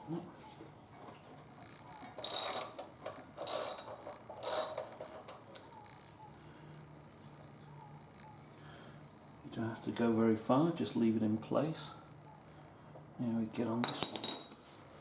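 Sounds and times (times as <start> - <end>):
ratchet wrench clicking: 2.2 - 4.9.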